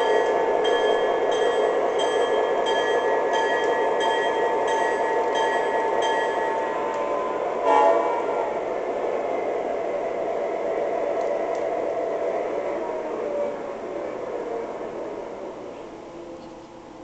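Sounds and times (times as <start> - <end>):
model train rumbling on track: 0.0 - 17.0
train horn: 6.6 - 8.6.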